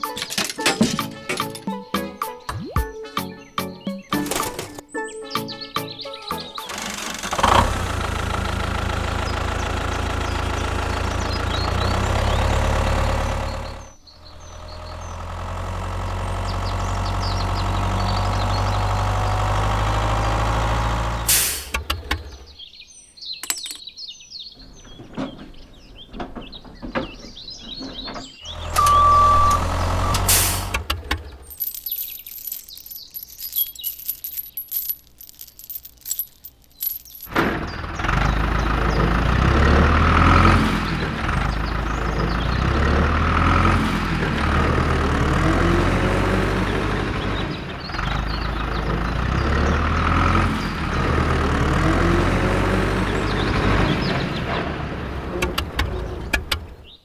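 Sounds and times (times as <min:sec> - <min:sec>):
engine rumbling: 0:04.0 - 0:04.9, 0:06.2 - 0:22.8, 0:23.4 - 0:23.8, 0:24.5 - 0:57.0
short beep: 0:28.8 - 0:30.3.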